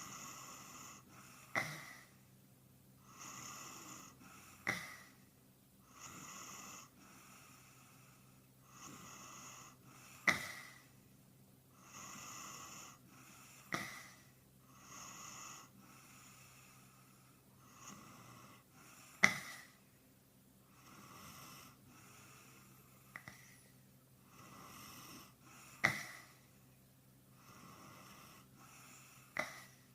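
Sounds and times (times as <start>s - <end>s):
person snoring: 0.0s - 2.1s, 3.0s - 5.1s, 5.9s - 10.9s, 11.8s - 19.8s, 20.7s - 23.6s, 24.2s - 26.4s, 27.4s - 29.9s.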